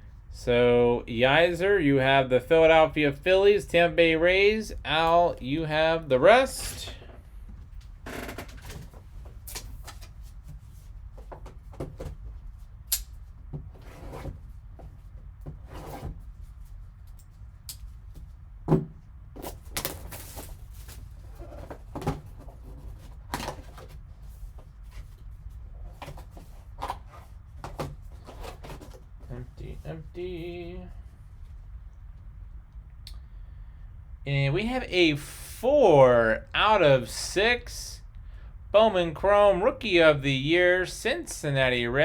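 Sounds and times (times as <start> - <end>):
cardboard and plastic rustling: 19.4 - 29.5.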